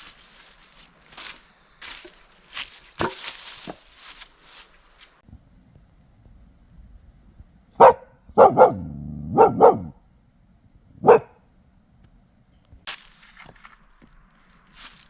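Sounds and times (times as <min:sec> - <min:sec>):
dog barking: 0:07.8 - 0:10.0, 0:11.0 - 0:11.4.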